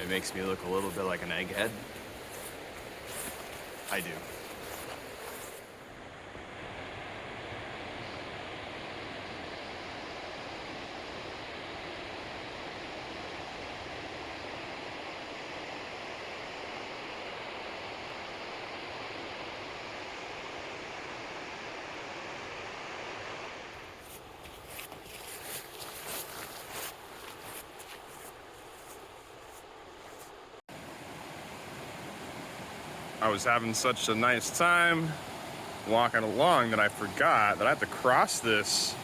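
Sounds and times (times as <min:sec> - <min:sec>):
fast-flowing creek water: 0:00.0 - 0:05.6, 0:30.7 - 0:39.0.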